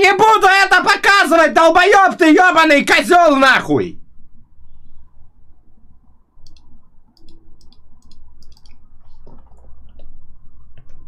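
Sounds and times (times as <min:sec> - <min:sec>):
faint low hum: 0:03.8 - 0:11.0
computer keys and mouse clicking: 0:06.4 - 0:10.1.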